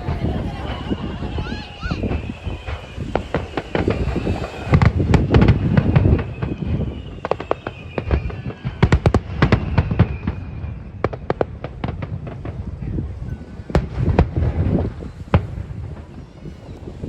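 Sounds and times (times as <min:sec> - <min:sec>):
faint high whistle: 0:00.0 - 0:11.2, 0:14.9 - 0:17.0
fireworks bangs and cracks: 0:00.0 - 0:17.0.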